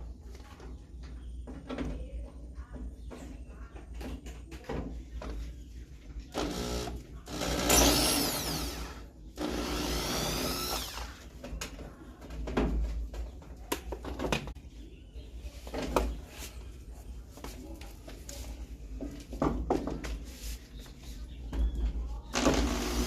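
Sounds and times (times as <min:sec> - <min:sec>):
power drill spinning: 0:06.3 - 0:11.3, 0:22.3 - 0:23.0.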